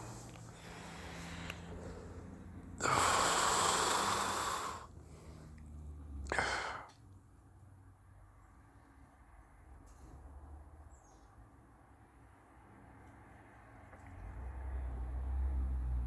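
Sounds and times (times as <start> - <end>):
person breathing out hard: 0.0 - 5.6, 6.3 - 7.0.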